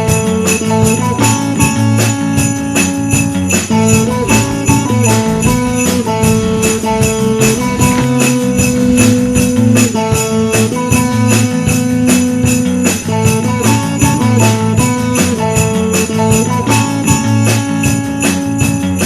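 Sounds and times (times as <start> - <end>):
pop backing track: 0.0 - 19.0
sleigh bells shaken: 0.0 - 19.0.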